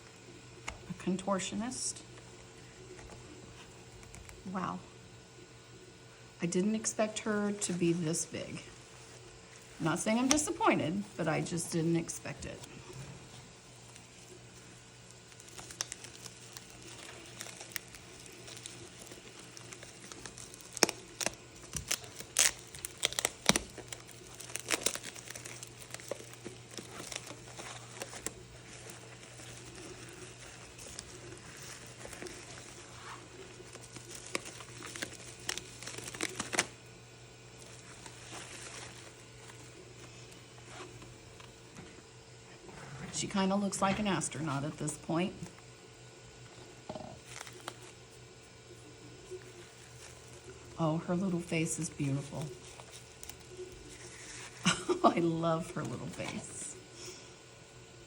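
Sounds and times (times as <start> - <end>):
packing wrap crinkling and tearing: 8.8 - 41.6, 46.6 - 56.9.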